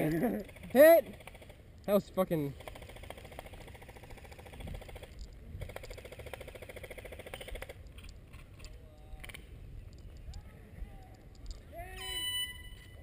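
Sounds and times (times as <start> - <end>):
electric gun firing full-auto: 2.6 - 7.8.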